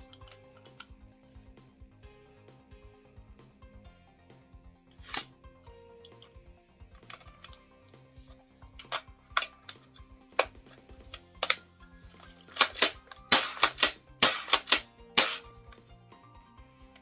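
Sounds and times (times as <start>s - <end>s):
airsoft gun clacks and snaps: 0.0s - 1.0s, 5.0s - 5.4s, 6.0s - 6.4s, 7.0s - 15.8s
background music: 0.0s - 17.0s.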